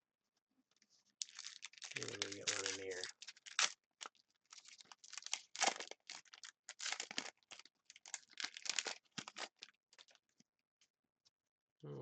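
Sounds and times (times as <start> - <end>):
wrapper tearing and crinkling: 1.2 - 10.2.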